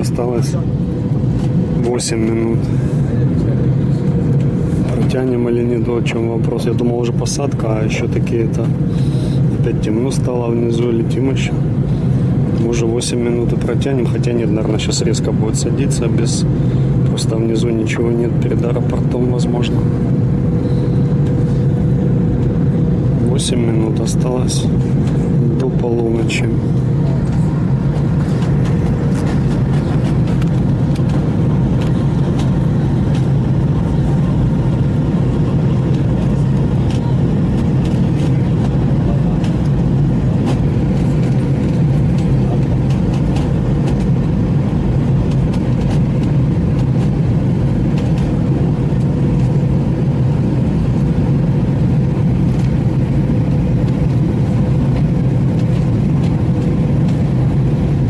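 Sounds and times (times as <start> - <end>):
jet engines droning: 0.0 - 58.0
rushing air: 8.7 - 9.6.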